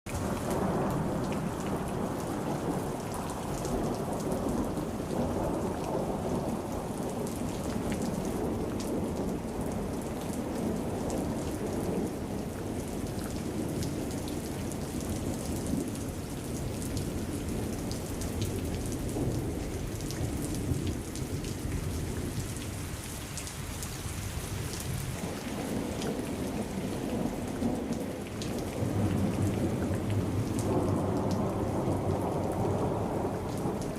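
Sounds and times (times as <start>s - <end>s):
heavy rain falling: 0.1s - 33.9s
thunder rumbling: 24.6s - 33.9s.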